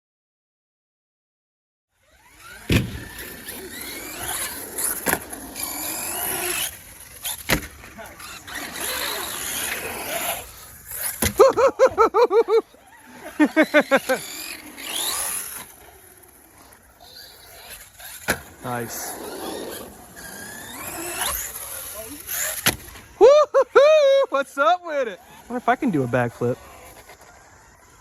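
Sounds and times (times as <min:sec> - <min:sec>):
electric motors whining: 0:02.0 - 0:28.0
rapid squeals: 0:02.0 - 0:28.0
sharp landing thumps: 0:02.6 - 0:03.3, 0:22.6 - 0:23.0.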